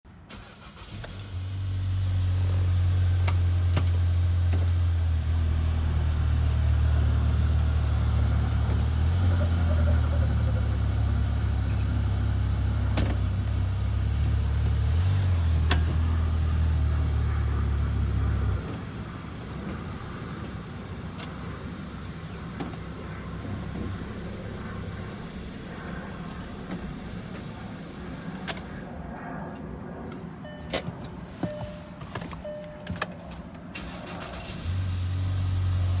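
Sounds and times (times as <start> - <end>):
low loud car engine flutter: 1.2 - 28.4.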